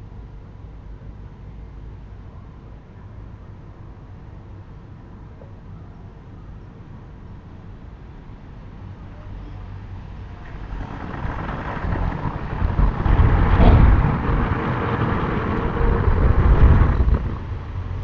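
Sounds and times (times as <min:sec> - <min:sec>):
car passing by: 0:09.6 - 0:18.0.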